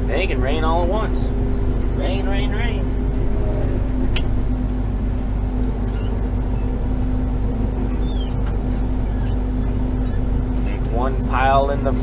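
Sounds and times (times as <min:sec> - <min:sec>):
vehicle engine droning: 0:00.0 - 0:12.0
faint short squeaks: 0:05.6 - 0:06.8, 0:07.9 - 0:10.3.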